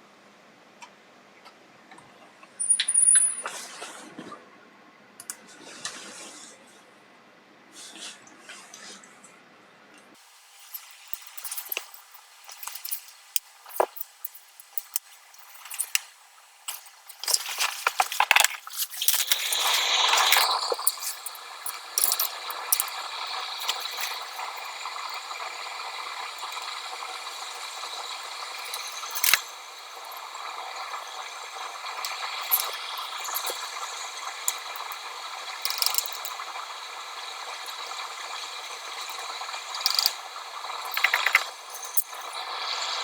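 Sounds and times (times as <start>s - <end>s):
steady hiss: 10.2s - 43.0s
hand tools clicking and scraping: 10.6s - 16.1s, 16.7s - 25.2s, 26.4s - 30.9s, 31.9s - 36.6s, 37.3s - 42.4s.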